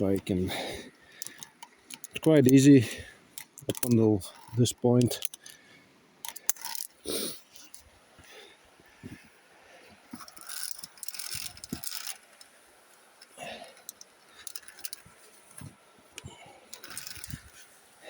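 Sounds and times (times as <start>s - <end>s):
metal carabiners clinking: 0.0s - 5.6s, 6.2s - 7.0s, 10.1s - 12.5s, 13.2s - 15.7s, 16.6s - 17.6s.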